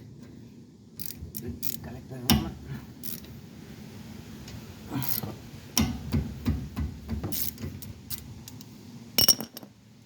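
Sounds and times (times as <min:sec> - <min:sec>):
metal tools clicking and knocking: 0:07.3 - 0:09.7.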